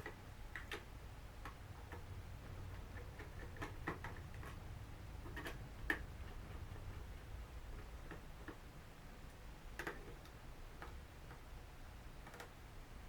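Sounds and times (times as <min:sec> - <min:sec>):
faint steady low hum: 0:00.0 - 0:13.0.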